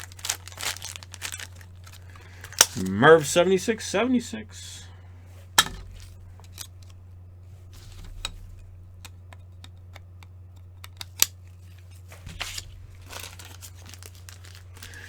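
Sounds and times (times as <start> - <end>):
wrapper rustles: 0.0 - 2.9, 11.4 - 15.0
steady low hum: 0.0 - 15.0.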